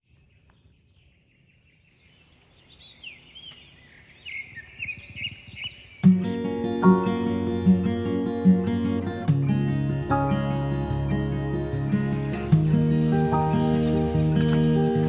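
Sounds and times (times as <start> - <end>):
birds chirping: 0.3 - 15.0
strummed acoustic guitar music: 6.0 - 15.0
high insect drone: 11.2 - 15.0.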